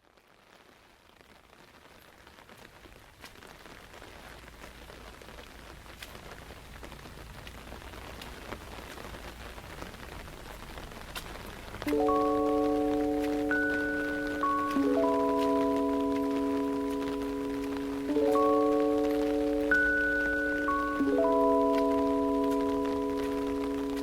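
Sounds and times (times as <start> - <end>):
rain pattering: 0.0 - 24.0
sustained musical notes: 11.9 - 24.0.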